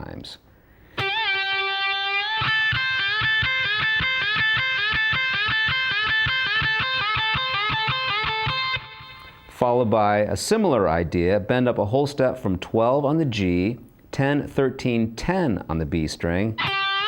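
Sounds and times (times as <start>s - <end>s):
electric guitar blues lick: 0.9s - 9.6s, 16.5s - 17.0s.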